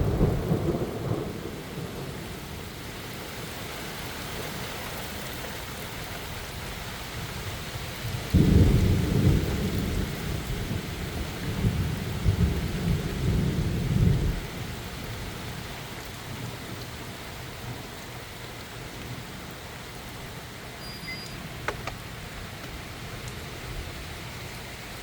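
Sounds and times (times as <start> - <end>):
thunderclap: 0.0 - 2.2, 8.3 - 14.4
rolling thunder: 0.0 - 2.8, 8.2 - 14.8
steady rain: 0.0 - 25.0.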